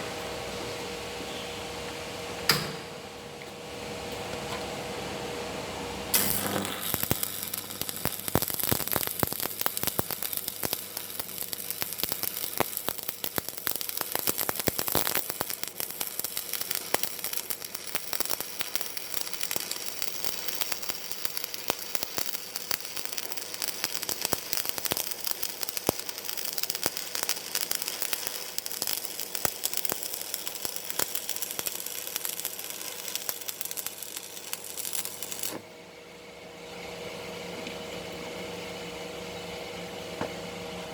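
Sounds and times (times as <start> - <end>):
welding arc crackling: 6.1 - 35.6.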